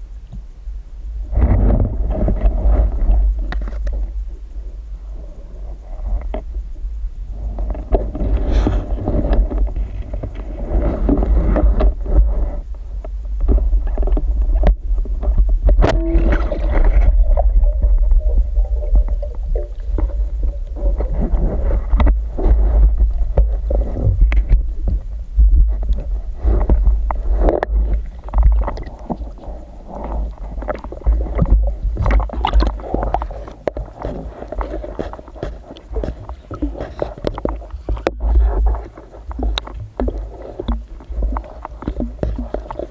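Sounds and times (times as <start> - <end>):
faint steady hum: 0.0 - 42.9
muffled underwater rumble: 0.0 - 42.9.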